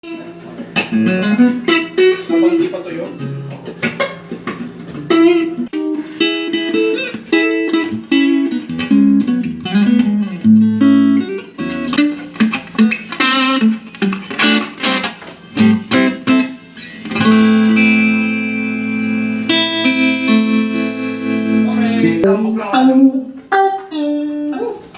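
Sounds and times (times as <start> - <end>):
electric guitar chord ringing: 0.0 - 3.7, 5.0 - 24.7
electric guitar licks: 0.0 - 24.9.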